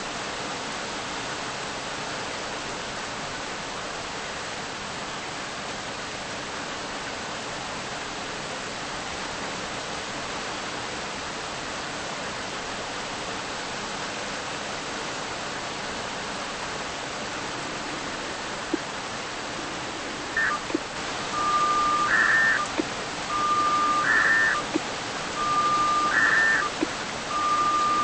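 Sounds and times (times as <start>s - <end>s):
steady hiss: 6.3s - 28.0s.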